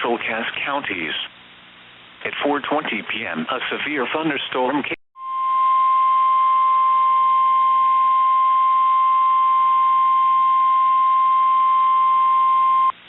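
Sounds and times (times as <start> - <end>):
radio hiss: 0.0 - 5.0.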